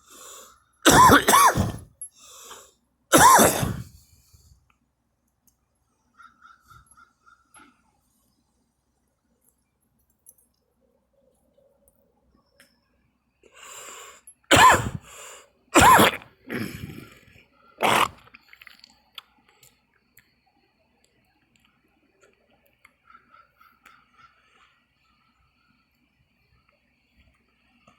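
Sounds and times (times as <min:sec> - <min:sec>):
person coughing: 0:00.9 - 0:01.9, 0:03.1 - 0:04.0, 0:14.5 - 0:15.0, 0:15.8 - 0:17.1, 0:17.8 - 0:18.2.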